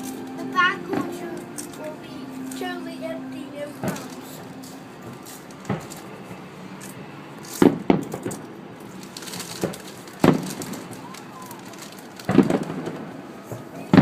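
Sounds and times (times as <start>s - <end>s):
distant fireworks bursting: 3.2s - 14.0s.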